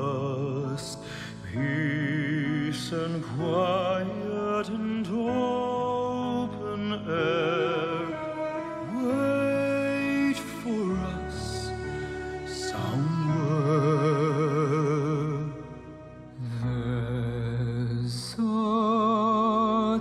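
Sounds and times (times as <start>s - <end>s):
person singing with vibrato: 0.0s - 20.0s
instrumental accompaniment: 4.2s - 17.6s.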